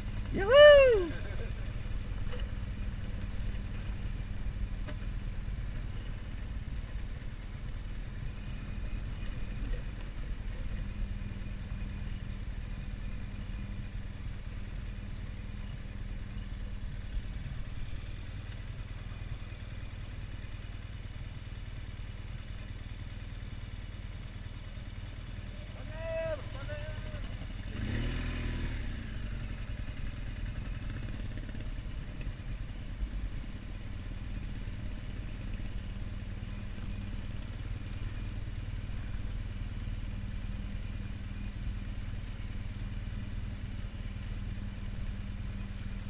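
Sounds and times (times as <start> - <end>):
engine running steadily: 0.0 - 46.0
faint ticks: 9.2 - 10.8, 18.4 - 18.7.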